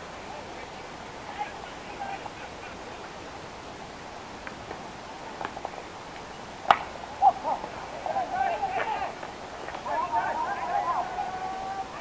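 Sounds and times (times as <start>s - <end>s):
distant voices calling out: 0.0s - 12.0s
sharp crack: 5.4s - 10.4s.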